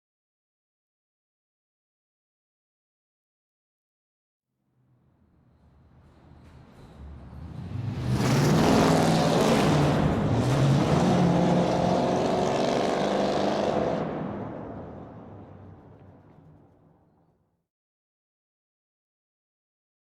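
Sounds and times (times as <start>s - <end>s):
car engine passing: 5.1s - 16.4s.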